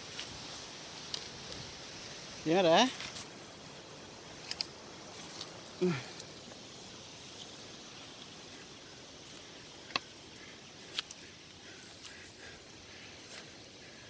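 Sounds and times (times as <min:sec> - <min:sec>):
faint outdoor hiss: 0:00.0 - 0:14.0.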